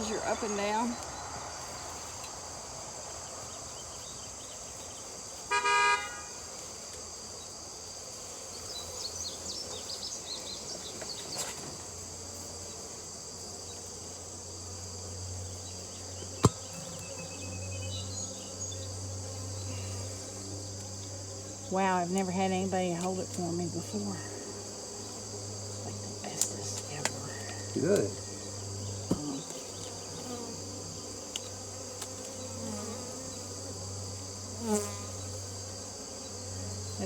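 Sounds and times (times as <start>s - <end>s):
insects chirring: 0.0s - 37.0s
short horn toot: 5.5s - 6.3s.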